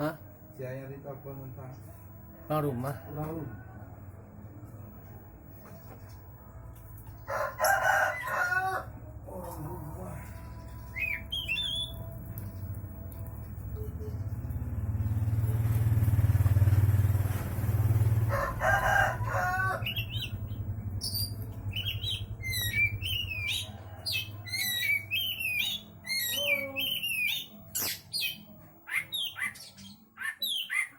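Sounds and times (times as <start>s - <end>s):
bird whistled song: 10.8s - 12.1s, 21.0s - 30.9s
low rumble: 19.8s - 24.0s.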